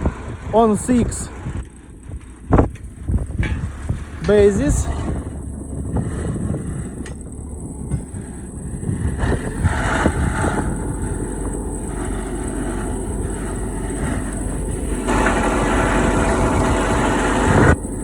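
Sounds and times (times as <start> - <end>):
diesel truck engine running: 0.0 - 18.0.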